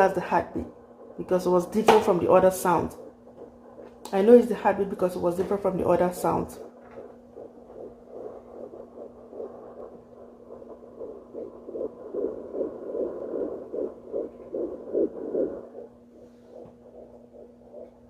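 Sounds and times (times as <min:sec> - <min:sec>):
fetal heartbeat on doppler: 0:00.0 - 0:18.0.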